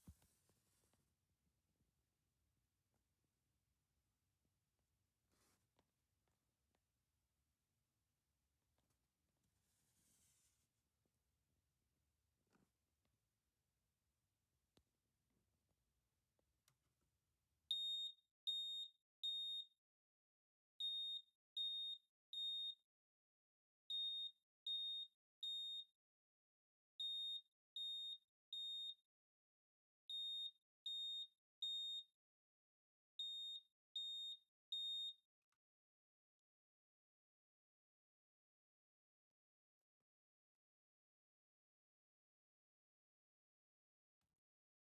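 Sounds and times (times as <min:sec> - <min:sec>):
smoke alarm beeping: 0:17.7 - 0:19.8, 0:20.8 - 0:22.8, 0:23.9 - 0:25.9, 0:27.0 - 0:29.0, 0:30.1 - 0:32.1, 0:33.2 - 0:35.2.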